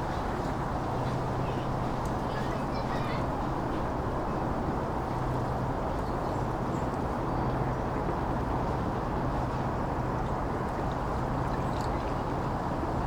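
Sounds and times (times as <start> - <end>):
distant road traffic: 0.0 - 5.6
wind: 0.0 - 13.0.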